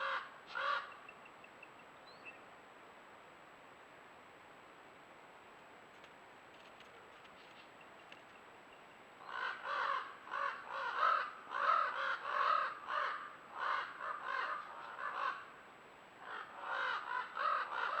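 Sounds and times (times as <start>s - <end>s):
crows cawing: 0.0s - 1.0s, 9.2s - 15.5s, 16.2s - 18.0s.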